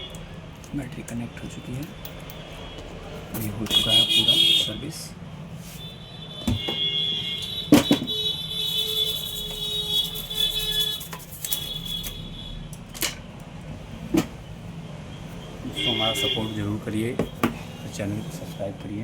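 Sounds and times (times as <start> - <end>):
sharp clicks and knocks: 7.7 - 8.2.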